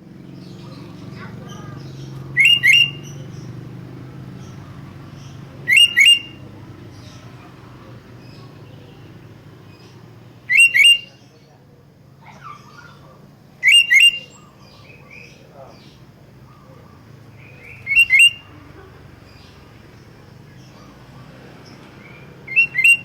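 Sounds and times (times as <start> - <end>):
soft bird calls: 0.0 - 23.0
bulbul two-note calls: 2.3 - 3.5, 5.6 - 6.6, 10.5 - 11.4, 13.6 - 15.3, 17.4 - 18.7, 22.5 - 23.0.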